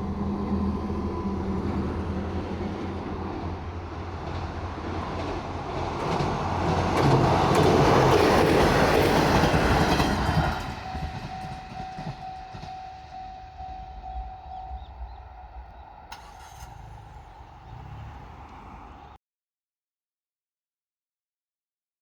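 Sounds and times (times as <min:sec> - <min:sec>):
train passing: 0:00.0 - 0:19.2
wheels on rail joints: 0:00.0 - 0:19.2
crossing warning bell ringing: 0:08.7 - 0:17.8.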